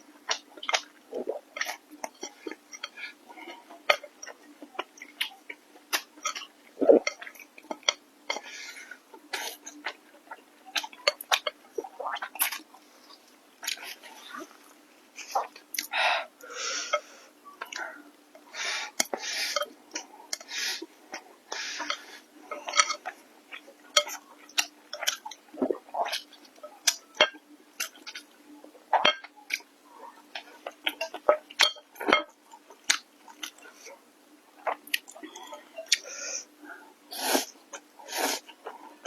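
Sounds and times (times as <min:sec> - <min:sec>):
slurping: 0:37.1 - 0:38.8.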